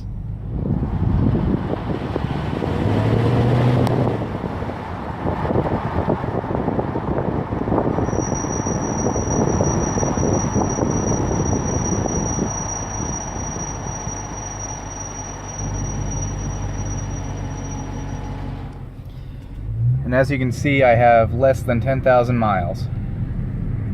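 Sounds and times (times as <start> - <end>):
car engine and road noise: 0.0 - 23.9
brakes squealing high-pitched: 7.7 - 20.2.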